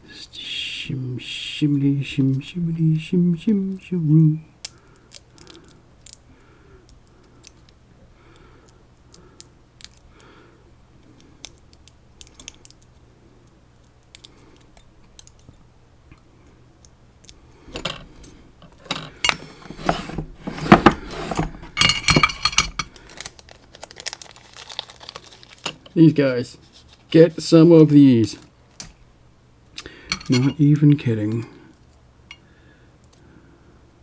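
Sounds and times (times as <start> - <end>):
faint handling noise: 17.6 - 27.1, 29.8 - 31.5
lock parts clicking and rattling: 18.6 - 23.0, 30.1 - 30.8.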